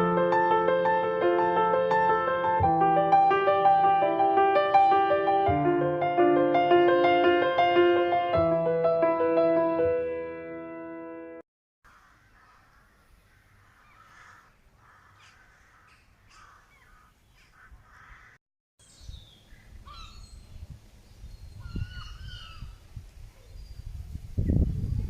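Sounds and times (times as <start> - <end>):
woodland birds calling: 11.9 - 22.8.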